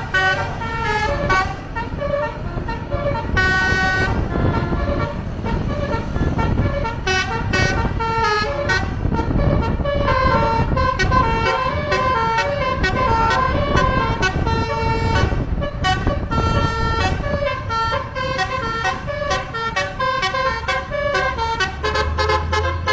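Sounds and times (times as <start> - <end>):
steady low rumble: 0.0 - 21.2
bus horn playing melody: 0.0 - 22.9.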